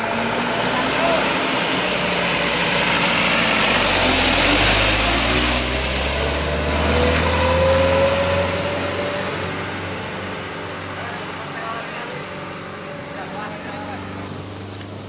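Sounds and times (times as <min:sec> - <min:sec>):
heavy truck engine revving: 0:00.0 - 0:15.0.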